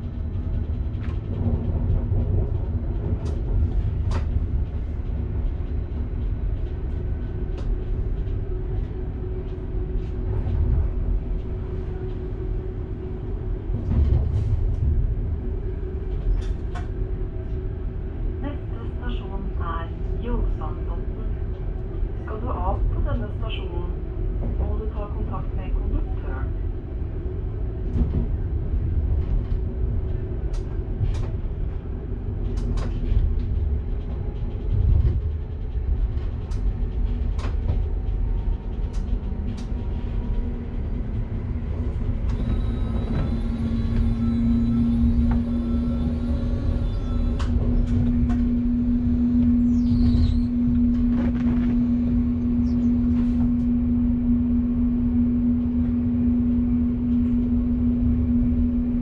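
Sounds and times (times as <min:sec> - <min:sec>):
train rumbling: 0:00.0 - 0:59.0
steady hum: 0:47.3 - 0:59.0.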